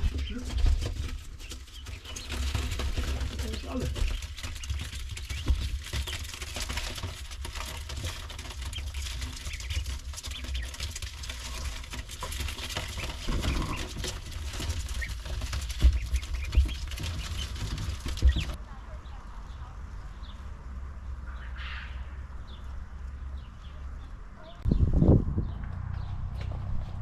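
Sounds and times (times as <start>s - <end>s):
faint bird calls: 18.2s - 22.8s
steady low rumble: 18.2s - 27.0s.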